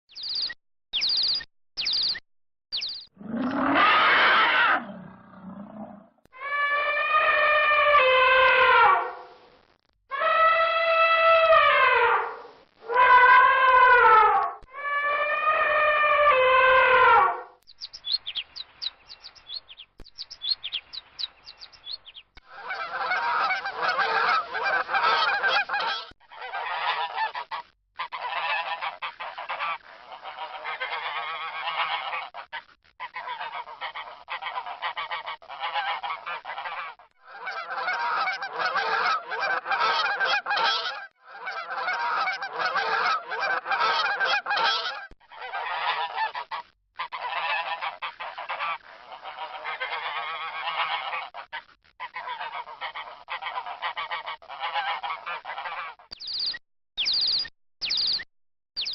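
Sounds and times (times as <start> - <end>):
finch chirping: 0.1 - 3.1, 17.7 - 22.3, 56.2 - 58.2
long falling animal call: 3.2 - 9.2, 10.1 - 17.4
geese honking: 22.5 - 56.0.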